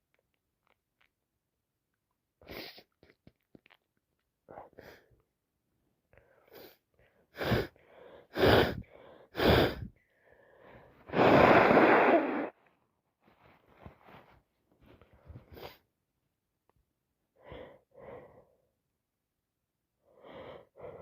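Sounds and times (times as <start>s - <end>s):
faint sniffs and breaths: 2.4s - 3.4s, 13.3s - 15.9s.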